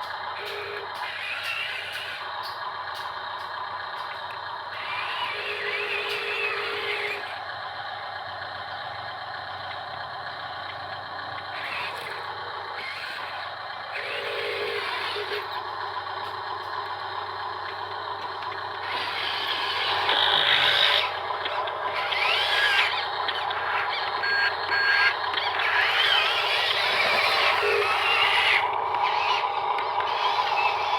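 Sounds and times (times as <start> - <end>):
small electric motors whining: 0.4 - 2.3, 4.7 - 7.4, 11.4 - 15.6, 18.8 - 30.9.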